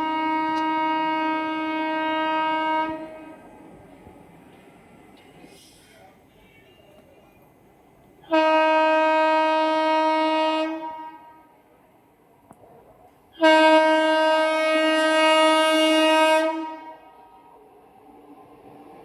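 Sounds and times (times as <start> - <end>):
locomotive horn blasts: 0.0 - 3.4, 8.3 - 11.6, 13.4 - 17.5.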